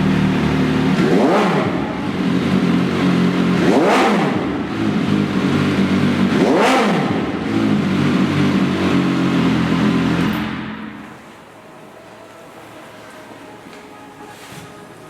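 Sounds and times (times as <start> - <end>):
motorcycle engine idling and revving: 0.0 - 11.3.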